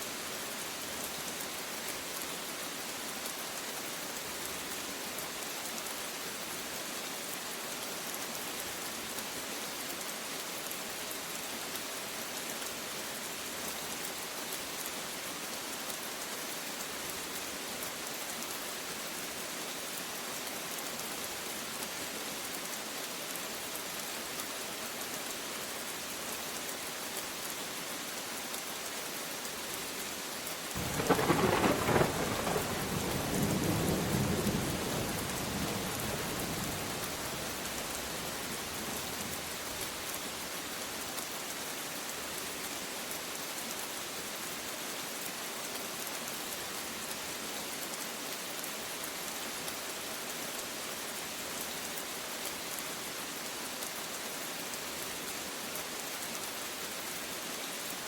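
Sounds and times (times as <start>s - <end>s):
rain pattering: 19.8s - 44.9s.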